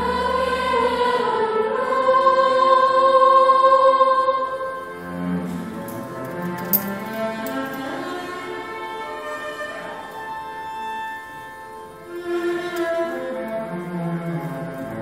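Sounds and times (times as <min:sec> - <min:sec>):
orchestra playing slow melody: 0:04.5 - 0:15.0.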